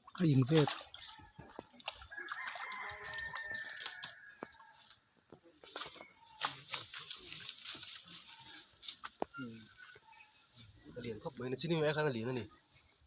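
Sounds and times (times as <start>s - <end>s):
rooster crowing: 2.0s - 4.9s.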